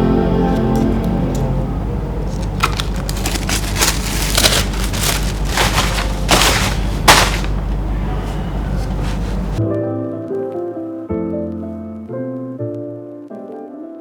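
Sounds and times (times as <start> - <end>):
soft background music: 0.0 - 2.8, 9.6 - 14.0
loud crackling and rustling: 2.3 - 9.6.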